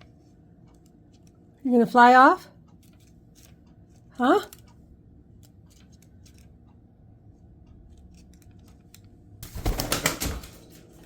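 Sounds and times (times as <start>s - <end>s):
parrot wings flapping: 9.4s - 11.0s.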